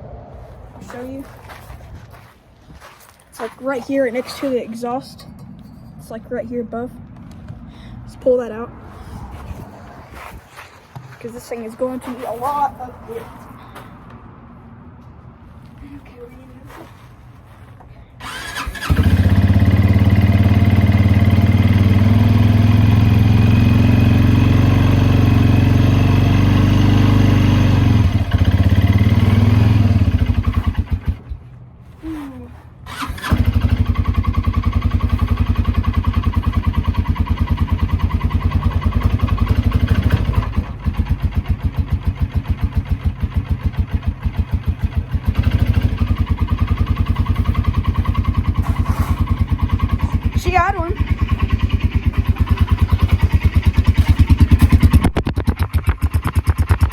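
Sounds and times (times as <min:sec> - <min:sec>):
single-cylinder engine running: 0:18.2 - 0:31.4, 0:32.9 - 0:56.9.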